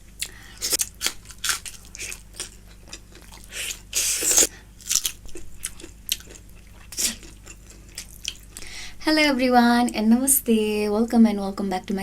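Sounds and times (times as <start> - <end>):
person chewing crunchy food: 0.1 - 8.7.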